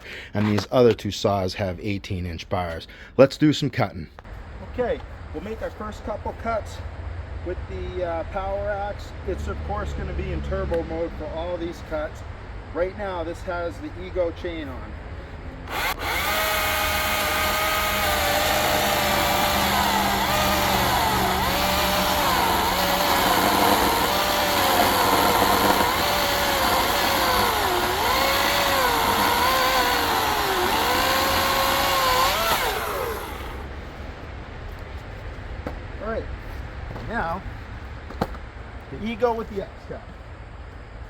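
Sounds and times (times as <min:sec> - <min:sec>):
chainsaw cutting log: 0:15.7 - 0:33.7.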